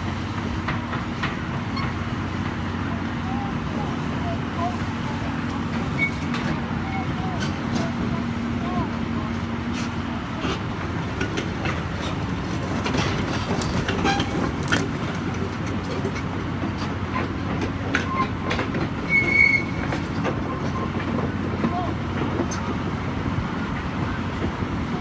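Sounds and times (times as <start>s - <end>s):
heavy machinery running: 0.0s - 19.1s.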